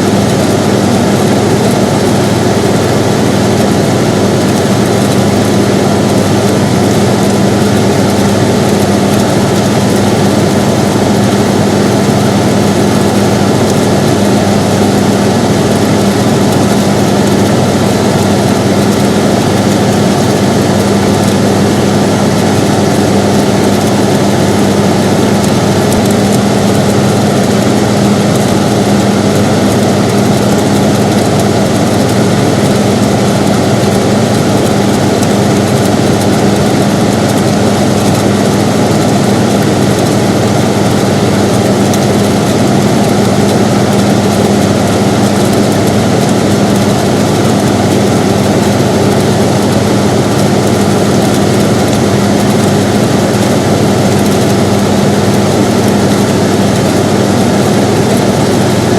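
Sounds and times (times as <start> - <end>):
air conditioner running: 0.0 - 58.9.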